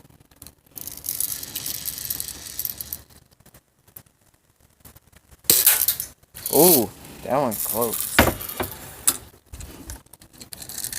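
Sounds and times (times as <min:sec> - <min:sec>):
metallic rattling of air rifle: 0:07.6 - 0:08.9.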